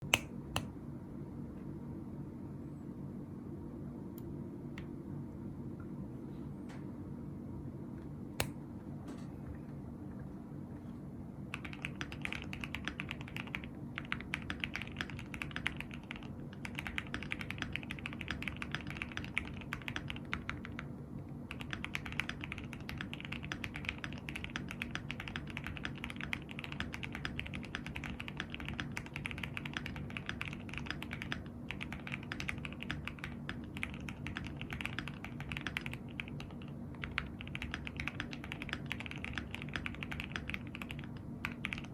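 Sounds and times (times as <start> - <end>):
low background hum: 0.0 - 41.9
mechanical keyboard typing: 11.5 - 20.9, 21.5 - 41.9.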